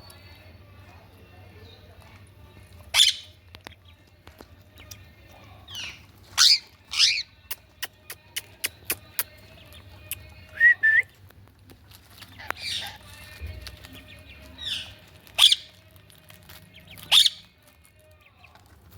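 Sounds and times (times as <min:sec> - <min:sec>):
parakeet screeching: 0:02.9 - 0:03.4, 0:05.8 - 0:07.4, 0:12.4 - 0:13.2, 0:15.4 - 0:15.7, 0:17.0 - 0:17.5.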